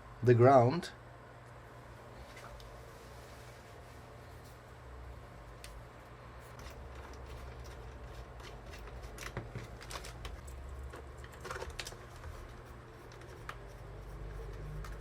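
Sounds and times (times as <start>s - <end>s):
steady low hum: 0.0s - 15.0s
plastic and metal parts handled: 6.5s - 13.7s.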